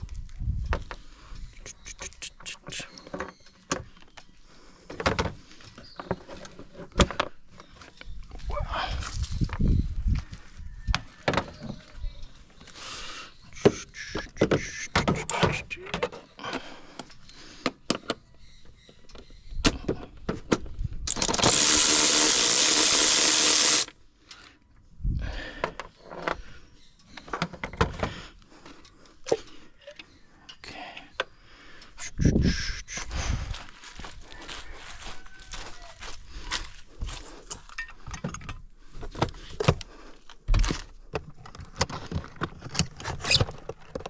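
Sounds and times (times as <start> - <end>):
power tool running: 21.1 - 23.9.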